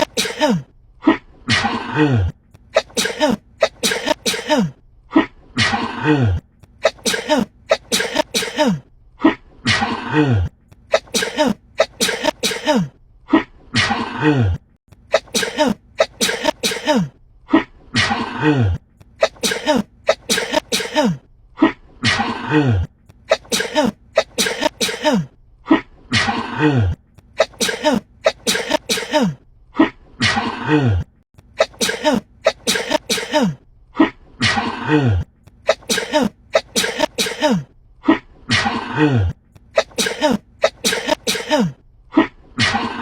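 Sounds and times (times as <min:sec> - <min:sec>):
woman sneezing: 0:00.0 - 0:00.7, 0:02.8 - 0:04.8, 0:06.8 - 0:08.8, 0:10.9 - 0:12.9, 0:15.1 - 0:17.1, 0:19.2 - 0:21.2, 0:23.3 - 0:25.3, 0:27.4 - 0:29.4, 0:31.6 - 0:33.6, 0:35.7 - 0:37.7, 0:39.8 - 0:41.8.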